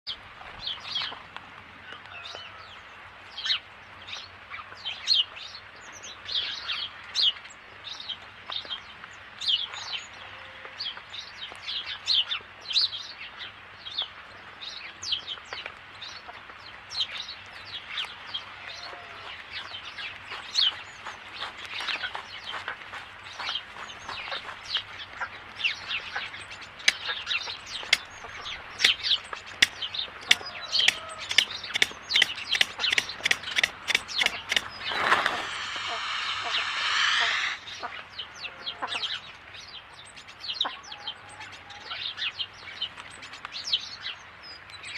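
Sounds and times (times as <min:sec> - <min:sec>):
bird chirping: 0:26.3 - 0:38.6.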